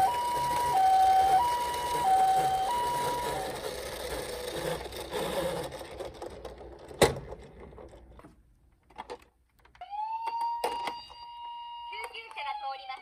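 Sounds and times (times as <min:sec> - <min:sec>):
electronic toy siren: 0:00.0 - 0:04.0, 0:09.8 - 0:13.0
toy car mechanical whirring rattle: 0:00.0 - 0:07.0.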